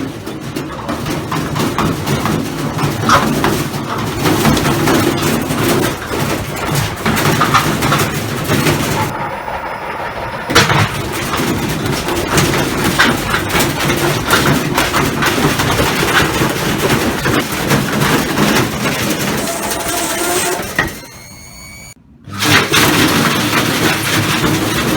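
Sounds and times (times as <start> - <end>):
washing machine spinning: 0.6 - 22.0
drum banging and clattering: 10.4 - 21.2.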